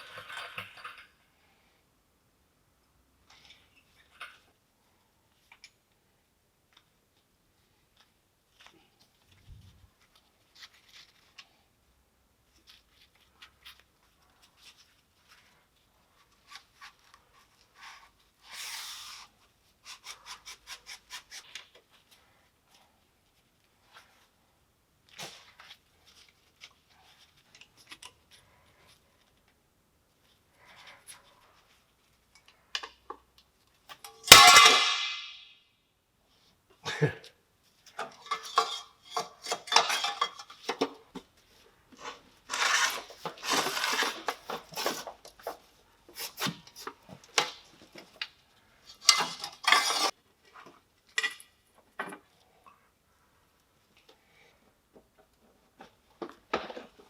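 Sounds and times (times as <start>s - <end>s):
metal tools clinking and clanking: 38.0s - 40.9s, 48.9s - 50.1s
metal scrapes: 42.5s - 45.0s, 49.0s - 50.1s.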